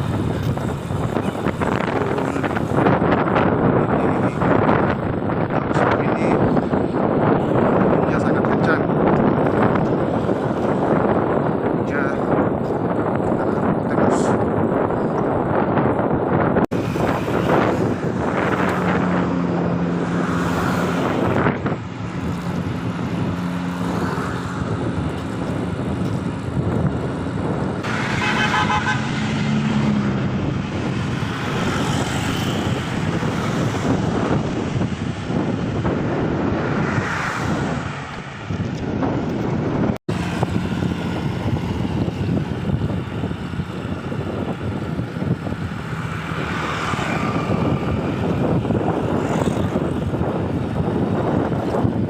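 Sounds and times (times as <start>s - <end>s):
vehicles passing: 0.0s - 52.0s
wind buffeting microphone: 0.0s - 52.0s
vehicle horn tooting: 27.9s - 29.2s.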